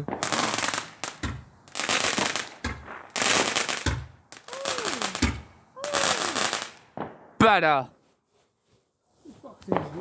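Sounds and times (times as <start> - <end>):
single firework cracks: 0.0 - 7.2
fireworks popping: 0.0 - 7.7, 9.6 - 10.0.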